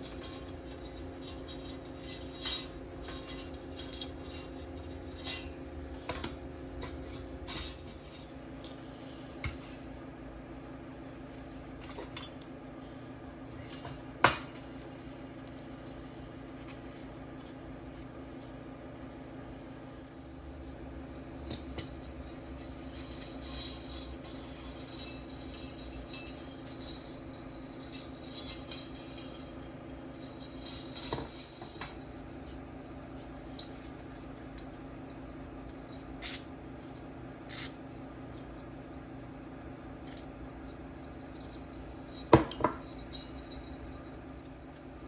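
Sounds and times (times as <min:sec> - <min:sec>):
metal parts scraping: 0:00.0 - 0:08.5, 0:21.6 - 0:32.0
steady low hum: 0:00.0 - 0:45.0.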